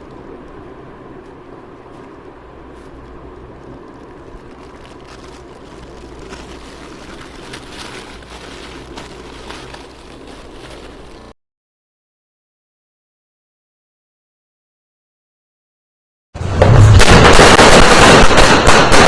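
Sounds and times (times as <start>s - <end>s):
firecrackers bursting in rapid crackle: 16.4s - 19.0s.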